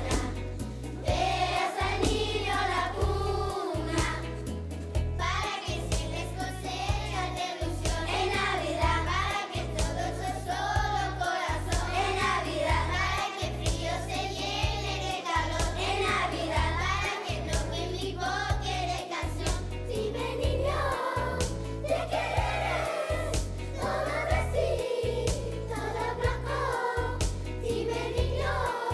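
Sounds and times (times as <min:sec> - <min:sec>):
choir singing: 0:00.0 - 0:00.4, 0:01.0 - 0:04.5, 0:05.2 - 0:28.9
instrumental accompaniment with beat: 0:00.0 - 0:12.5, 0:21.0 - 0:28.1.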